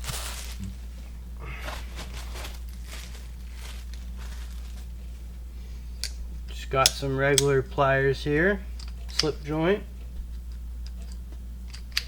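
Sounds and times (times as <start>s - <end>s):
steady low hum: 0.0s - 12.0s
tools handling rustle: 1.6s - 5.2s.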